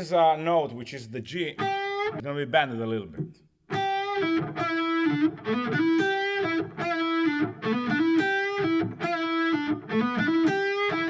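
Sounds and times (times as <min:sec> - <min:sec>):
distorted electric guitar lead: 0:01.6 - 0:02.2, 0:03.7 - 0:11.0.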